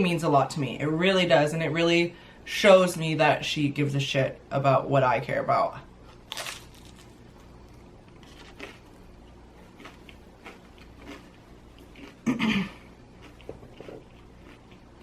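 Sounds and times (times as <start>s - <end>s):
biting crispy pizza: 6.2s - 12.3s
soft chewing with mouth clicks: 6.8s - 15.0s.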